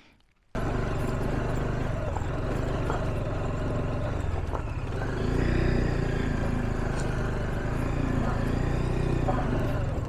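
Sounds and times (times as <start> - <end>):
road and wind noise: 0.5 - 10.0
motorcycle engine running: 0.6 - 10.0.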